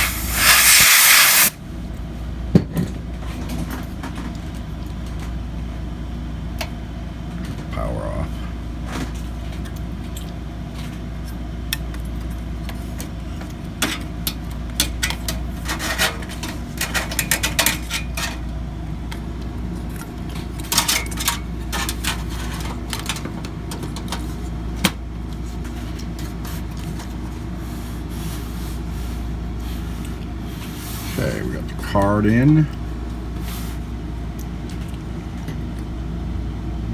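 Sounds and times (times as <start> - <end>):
steady low hum: 0.0 - 2.0.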